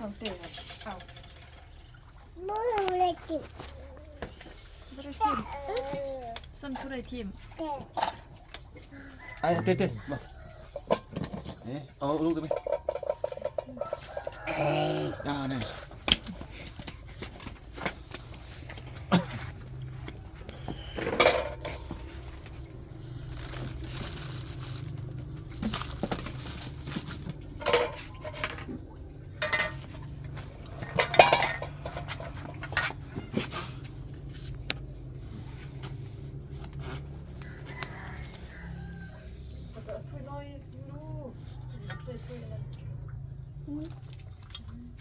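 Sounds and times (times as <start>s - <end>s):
dishes and utensils clinking: 10.7s - 14.4s, 20.8s - 22.5s, 26.9s - 33.4s.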